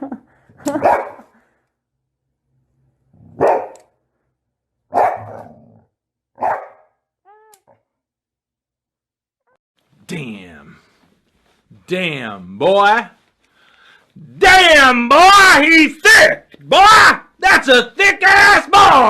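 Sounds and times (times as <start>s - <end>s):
dog barking: 0.7s - 1.3s, 3.3s - 3.9s, 4.9s - 5.6s, 6.4s - 7.0s.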